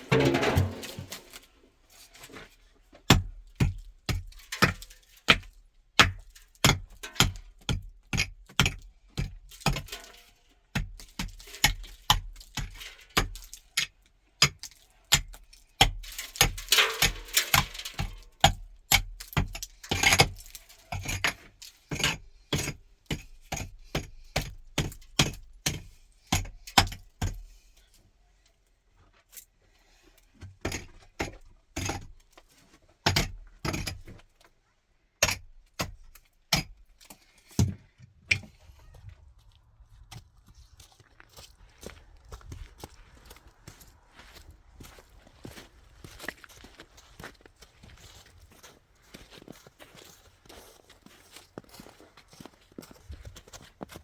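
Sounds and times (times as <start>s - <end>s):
hard objects knocking: 0.0s - 1.3s
scraping: 0.0s - 1.5s.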